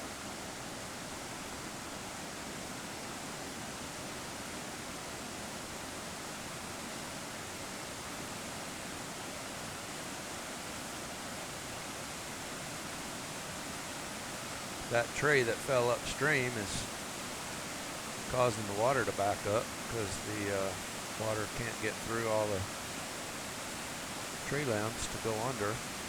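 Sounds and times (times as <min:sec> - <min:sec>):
flooded river rushing: 0:12.3 - 0:26.0.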